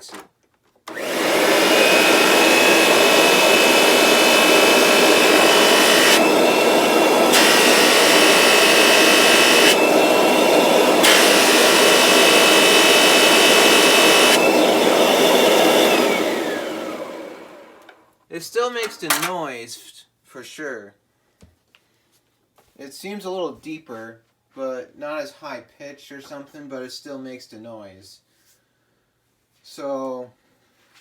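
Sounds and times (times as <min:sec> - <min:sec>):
vacuum cleaner grinding and whining: 0:00.9 - 0:18.0.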